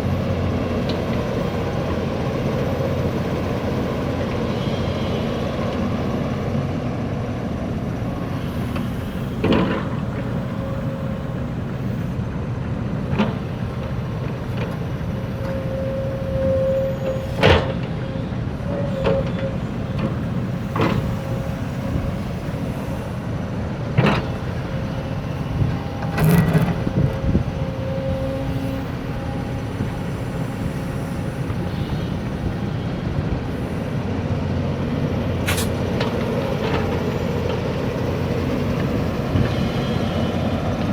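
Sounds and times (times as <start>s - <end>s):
backhoe diesel engine running: 16.8s - 40.9s.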